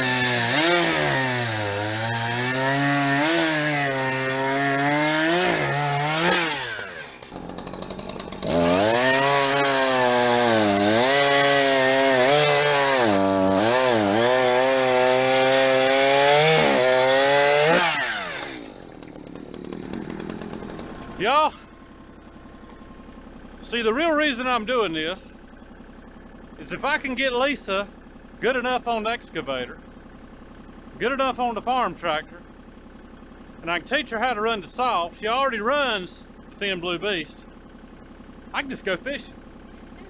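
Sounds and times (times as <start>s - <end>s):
chainsaw cutting a log: 0.0s - 21.7s.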